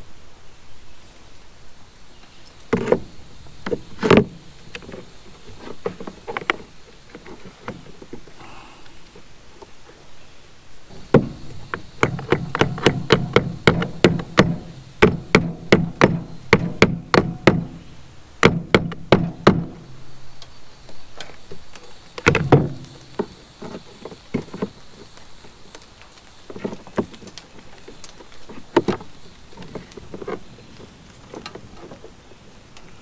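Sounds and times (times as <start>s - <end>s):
rapid hammer blows: 10.9s - 19.8s.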